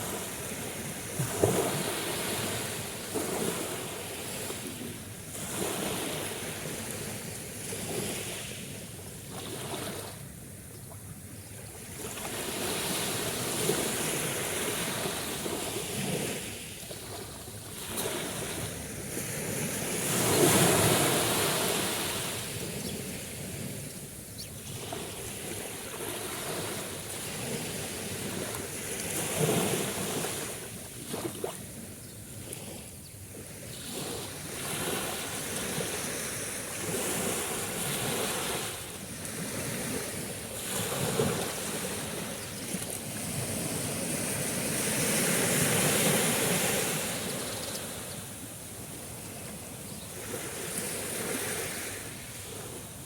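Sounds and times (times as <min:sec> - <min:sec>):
sea waves breaking on shore: 0:00.0 - 0:10.3, 0:11.6 - 0:53.0.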